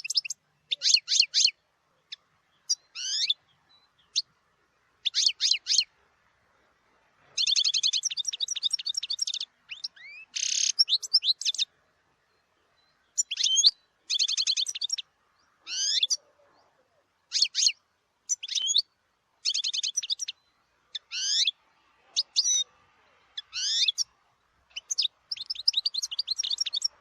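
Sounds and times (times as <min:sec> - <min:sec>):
goldfinch twittering: 0:07.4 - 0:11.7, 0:12.8 - 0:15.1, 0:15.7 - 0:16.2, 0:17.3 - 0:21.6, 0:23.4 - 0:24.1, 0:24.7 - 0:27.0
goldfinch chattering trills: 0:13.2 - 0:15.0, 0:19.4 - 0:21.5, 0:24.7 - 0:27.0.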